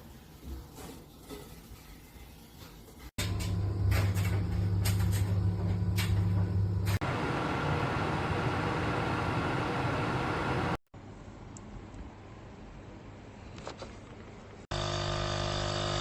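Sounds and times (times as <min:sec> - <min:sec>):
coffee machine pump humming: 0:03.2 - 0:10.8, 0:14.7 - 0:16.0.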